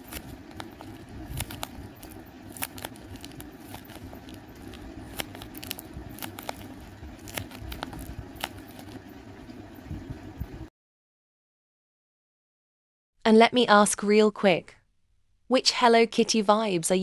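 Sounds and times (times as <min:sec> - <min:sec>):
plastic bag crinkling: 0:00.0 - 0:09.1.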